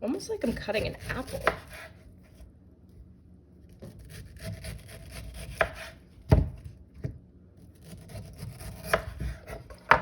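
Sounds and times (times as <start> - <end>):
knife cutting pineapple: 0.4 - 2.0, 3.7 - 6.5, 7.6 - 10.0.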